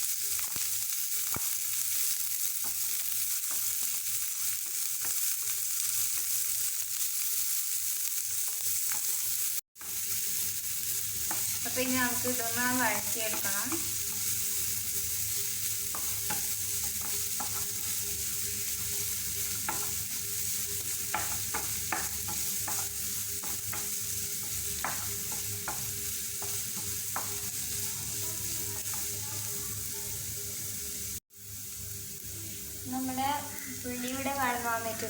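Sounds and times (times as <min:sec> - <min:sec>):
onion sizzling in hot oil: 0:00.0 - 0:35.0
spoon scraping a pan: 0:13.0 - 0:29.4.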